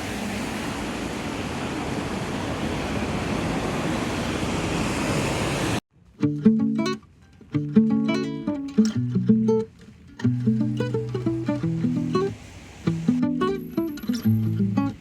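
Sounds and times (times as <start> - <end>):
steady rushing noise: 10.8 - 15.0.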